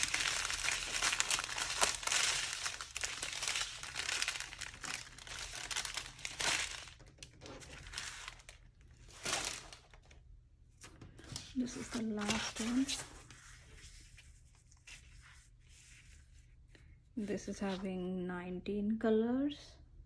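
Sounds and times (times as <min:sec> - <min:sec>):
plastic packaging crinkling: 0:00.0 - 0:10.2, 0:11.2 - 0:13.2.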